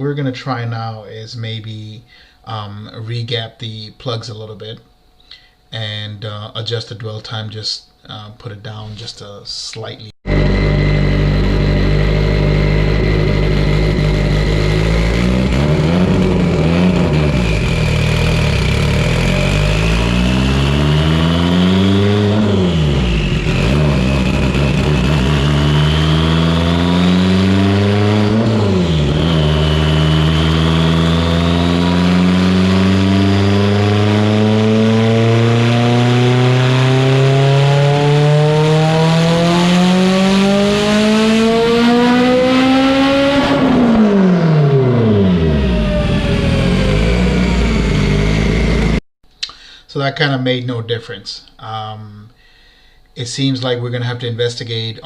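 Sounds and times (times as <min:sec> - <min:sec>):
high whine: 0:00.0 - 0:49.0
car engine revving on dyno: 0:10.2 - 0:49.0.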